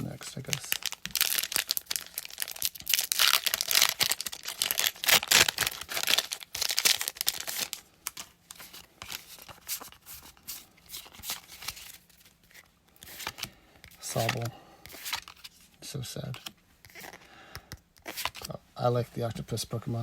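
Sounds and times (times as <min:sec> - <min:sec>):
foil pack tearing and crinkling: 0:00.3 - 0:08.2
cards scraping and ticking: 0:06.9 - 0:15.5, 0:16.2 - 0:18.6.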